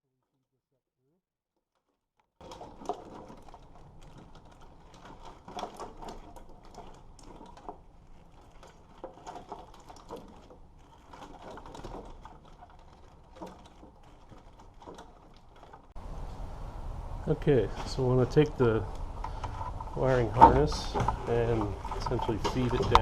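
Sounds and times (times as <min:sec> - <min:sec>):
wires rustling: 0:01.8 - 0:23.0.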